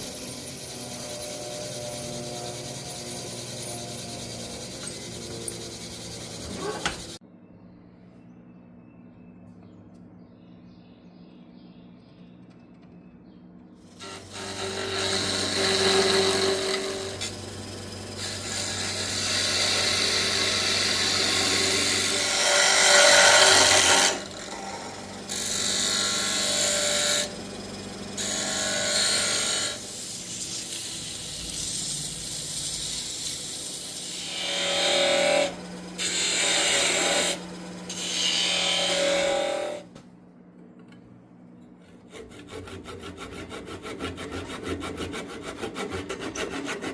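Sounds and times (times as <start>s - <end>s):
lathe motor hum: 0.0s - 7.2s, 24.8s - 39.8s
rasping on spinning wood: 0.0s - 7.2s, 42.1s - 46.9s.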